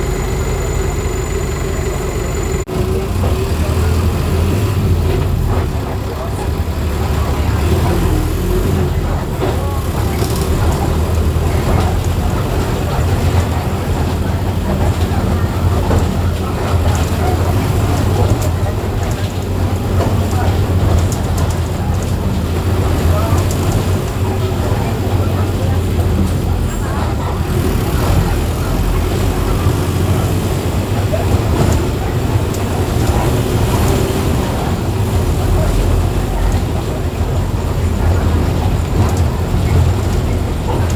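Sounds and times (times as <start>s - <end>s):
diesel bus engine droning: 0.0s - 40.9s
light rattles and clicks: 5.0s - 40.9s.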